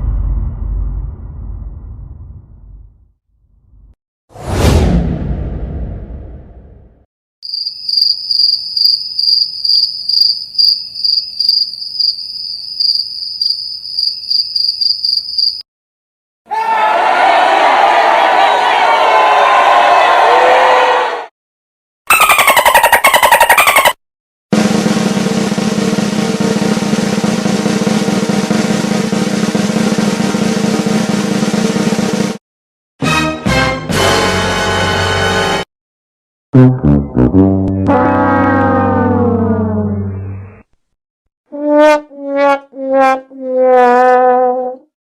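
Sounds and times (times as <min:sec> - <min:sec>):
cricket chirping: 0:07.4 - 0:15.6
crowd cheering: 0:16.5 - 0:21.3
snare drum roll: 0:24.6 - 0:32.4.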